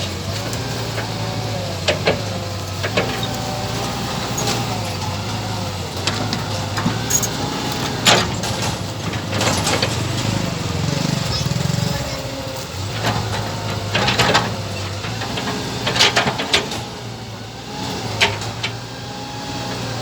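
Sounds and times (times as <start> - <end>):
model excavator motor hum: 0.0 - 20.0
sharp clicks and knocks: 6.0 - 10.4.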